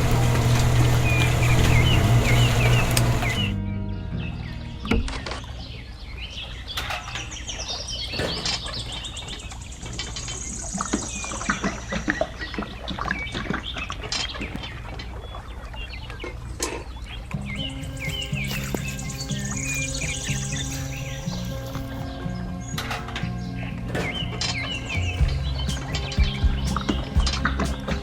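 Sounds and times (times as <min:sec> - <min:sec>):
steady low hum: 0:00.0 - 0:04.2
birds chirping: 0:00.0 - 0:28.0.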